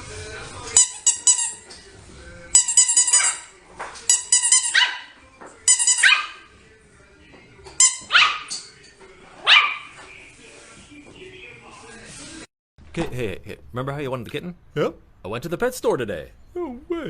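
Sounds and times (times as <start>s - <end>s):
dog barking high-pitched: 3.0s - 3.5s, 4.6s - 5.2s, 5.9s - 6.5s, 8.0s - 8.5s, 9.4s - 9.9s.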